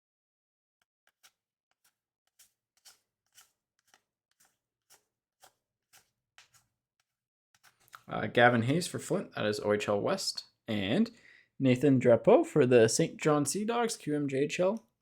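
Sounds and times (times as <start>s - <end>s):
trading cards sliding swishes: 1.1s - 8.0s.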